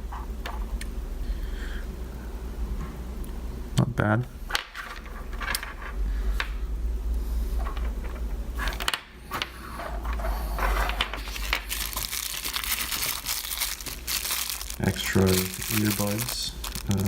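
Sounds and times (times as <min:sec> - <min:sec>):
plastic and cardboard crinkling: 0:07.6 - 0:17.0.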